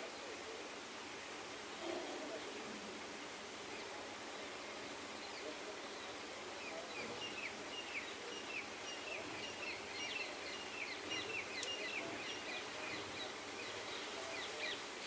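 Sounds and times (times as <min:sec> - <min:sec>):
outdoor background hiss: 0:00.0 - 0:15.0
small birds chirping: 0:03.7 - 0:15.0.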